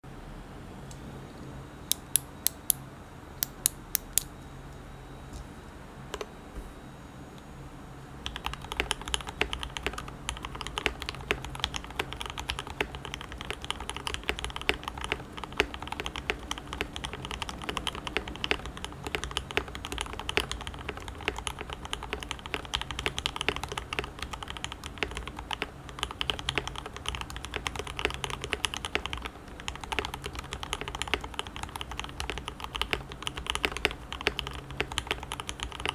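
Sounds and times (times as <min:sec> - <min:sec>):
mechanical keyboard typing: 0:08.2 - 0:35.9.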